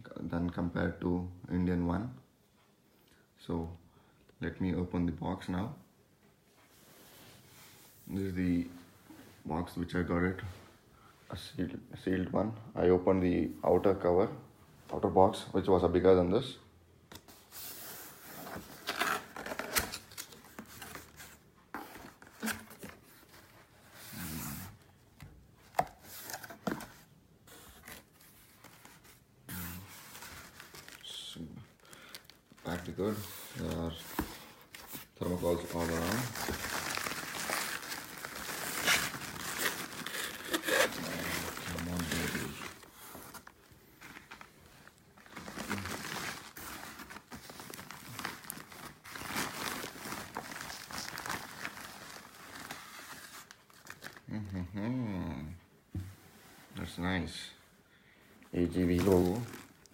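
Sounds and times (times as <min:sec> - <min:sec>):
foam packaging rustling and crinkling: 0:17.3 - 0:24.8, 0:25.6 - 0:54.4, 0:58.6 - 0:59.9.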